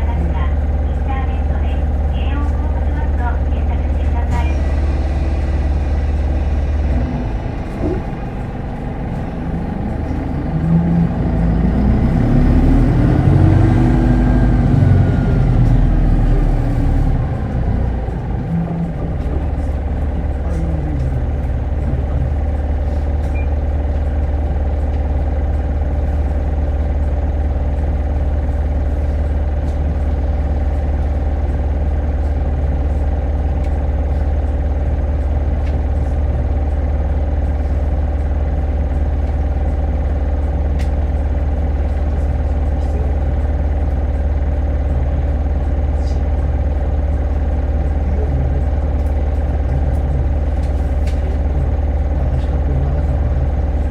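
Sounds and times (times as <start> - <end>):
bus engine running: 0.0 - 53.9.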